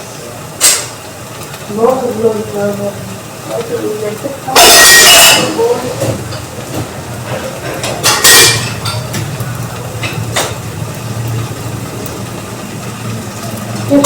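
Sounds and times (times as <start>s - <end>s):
cookware clanking on a stove: 0.5s - 1.6s, 3.5s - 11.7s
low hum: 8.6s - 14.0s.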